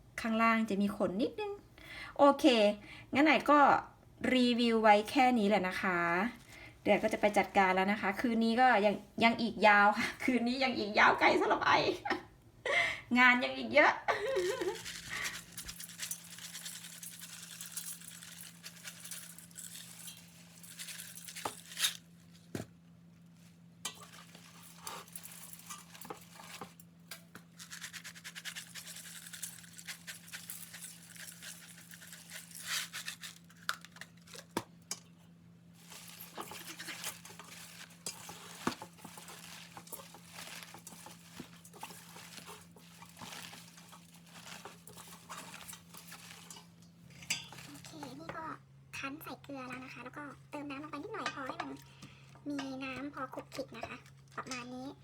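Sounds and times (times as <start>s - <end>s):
wet leaves rustling and crinkling: 14.2s - 34.6s, 35.8s - 48.3s.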